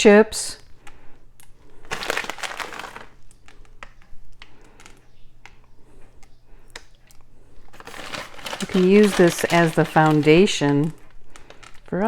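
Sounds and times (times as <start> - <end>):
chocolate chips clicking: 1.4 - 5.7, 6.7 - 12.0
plastic bag crinkle: 1.6 - 5.0, 7.6 - 12.0.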